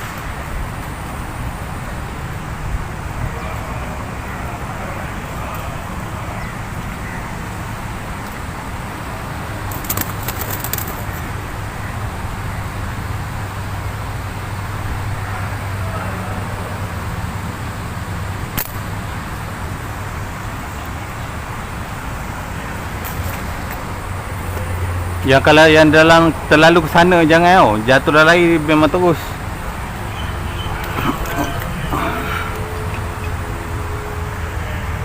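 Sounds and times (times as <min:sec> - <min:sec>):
sharp clicks: 0:18.6 - 0:18.8
sharp snap: 0:18.6 - 0:18.8.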